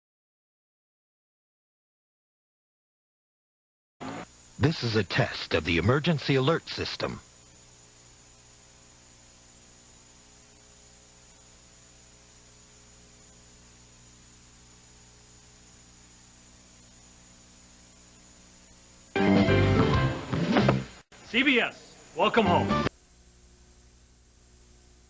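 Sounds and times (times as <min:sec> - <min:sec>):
electrical mains hum with whine: 0:04.0 - 0:25.0
person speaking: 0:04.6 - 0:07.2.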